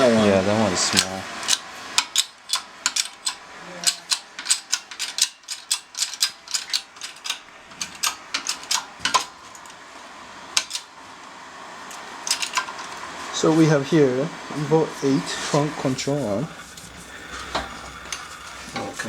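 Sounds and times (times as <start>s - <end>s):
ratchet clicking: 0.9s - 9.8s, 10.6s - 11.0s, 11.9s - 13.0s.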